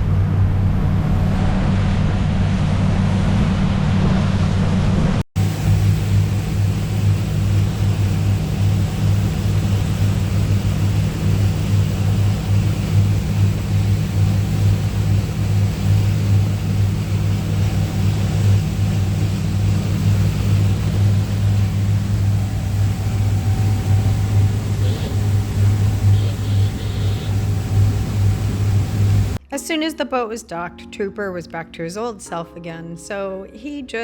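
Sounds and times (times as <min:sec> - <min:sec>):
boat engine droning: 0:00.0 - 0:29.4
wind and water hiss: 0:05.4 - 0:29.4.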